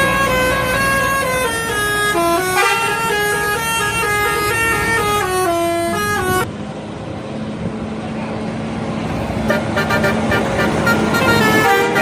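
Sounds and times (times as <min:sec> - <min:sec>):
bus horn playing stepped notes: 0:00.0 - 0:06.4, 0:09.5 - 0:12.0.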